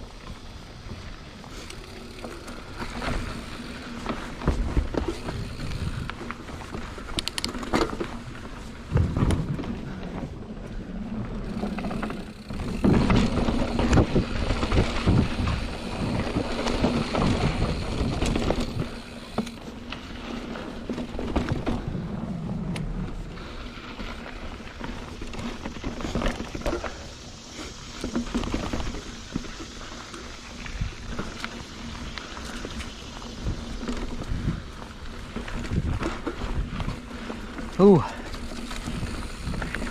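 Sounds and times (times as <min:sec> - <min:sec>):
bike rattling and knocking: 0:00.0 - 0:27.2, 0:27.8 - 0:39.9
bike tyres crunching over dirt: 0:00.0 - 0:39.9
wind rumbling on microphone: 0:00.0 - 0:39.9.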